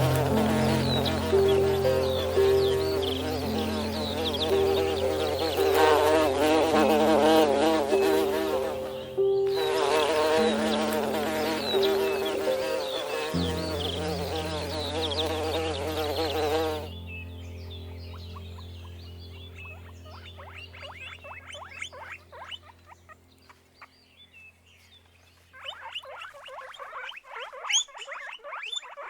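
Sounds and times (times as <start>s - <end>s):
slow held music notes: 0.0s - 21.2s
insects buzzing: 0.0s - 23.6s.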